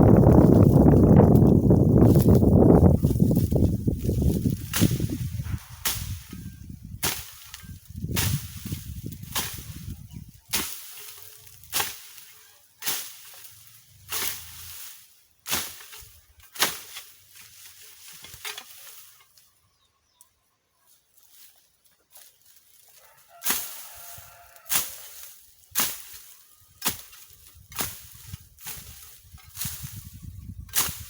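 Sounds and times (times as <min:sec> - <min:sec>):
wind rumble on microphone: 0:00.0 - 0:10.6, 0:27.4 - 0:31.0
hand tool chopping brush: 0:00.2 - 0:09.9, 0:10.5 - 0:19.1, 0:23.4 - 0:31.0.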